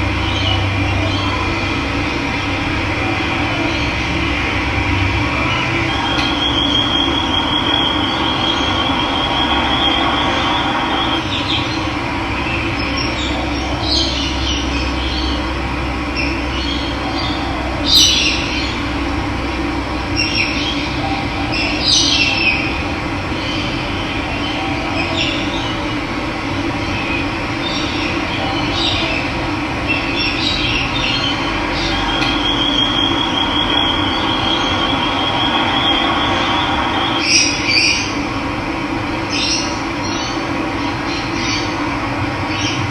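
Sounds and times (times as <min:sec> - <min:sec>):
birds calling: 0:00.2 - 0:15.5, 0:16.1 - 0:18.9, 0:26.7 - 0:38.2.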